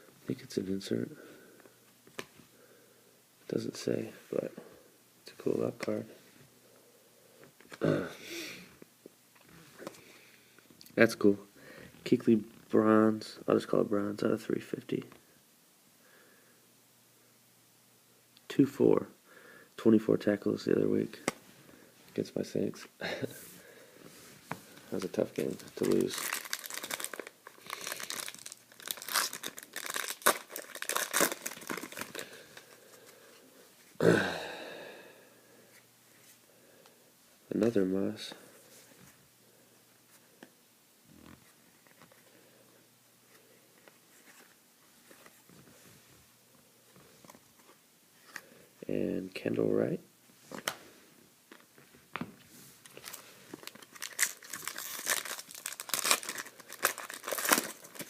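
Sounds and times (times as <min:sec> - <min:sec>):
wrapper tearing and crinkling: 0:25.0 - 0:32.7, 0:52.9 - 0:58.0.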